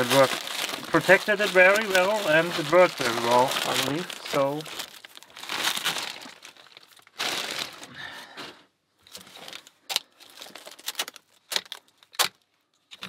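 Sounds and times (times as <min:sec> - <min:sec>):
plastic bag crinkling: 0:00.0 - 0:12.4.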